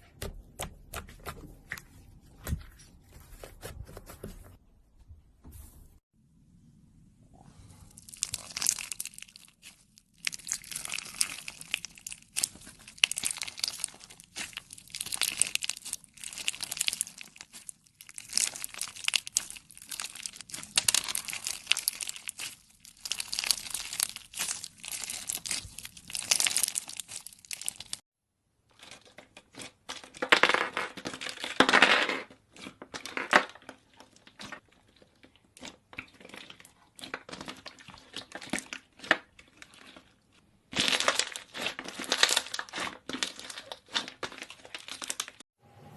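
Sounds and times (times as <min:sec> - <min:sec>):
slime crackling: 0:08.0 - 0:28.0, 0:40.7 - 0:45.4.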